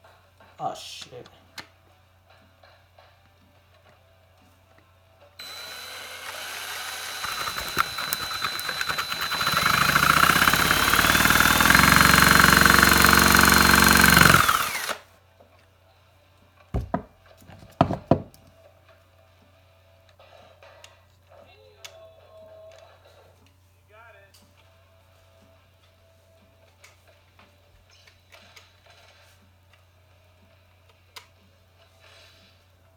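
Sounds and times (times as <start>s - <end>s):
electric drill running: 5.4s - 15.0s
sharp clicks: 5.4s - 15.0s.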